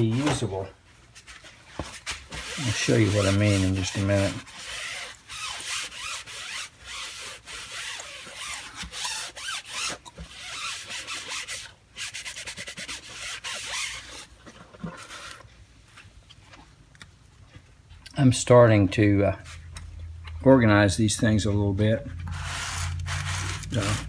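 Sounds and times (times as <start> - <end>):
hand scrubbing a case: 0.0 - 15.5, 22.2 - 24.0.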